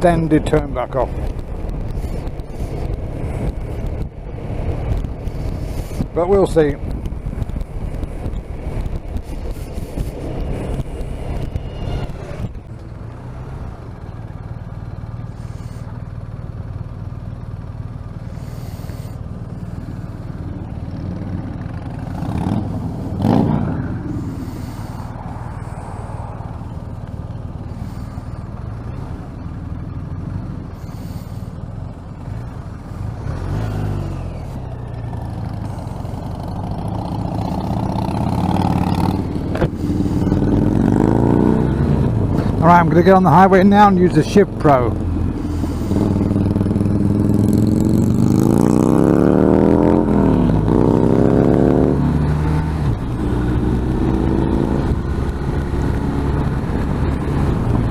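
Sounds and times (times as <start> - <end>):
motorcycle engine running: 0.0 - 57.9
wind and road noise: 0.0 - 57.9.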